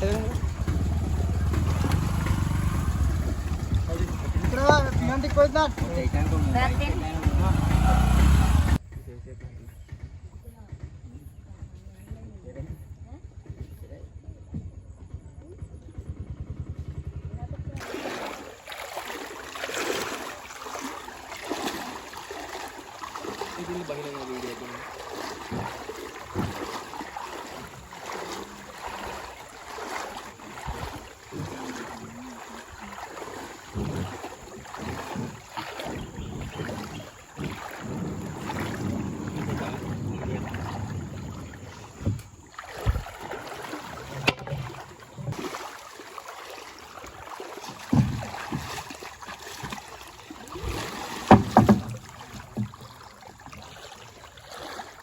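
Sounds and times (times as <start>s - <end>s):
knocks on boat: 0.0s - 8.8s, 22.6s - 45.5s, 47.6s - 53.2s
water sloshing around boat: 0.0s - 8.8s, 17.7s - 55.0s.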